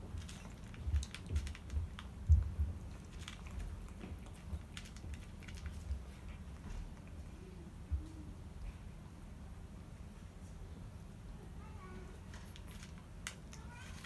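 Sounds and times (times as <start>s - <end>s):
cats chewing food: 0.0s - 9.1s, 12.0s - 14.0s.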